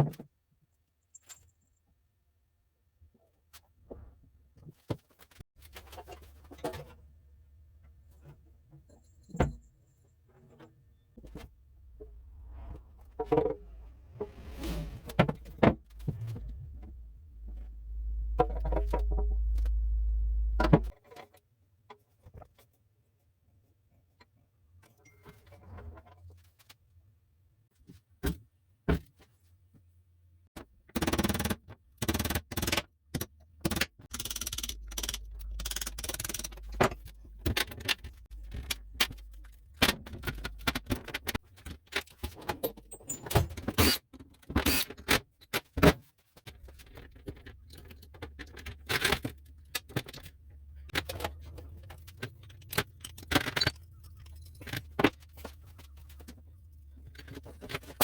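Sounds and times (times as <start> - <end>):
metal scraping: 11.2 - 20.9.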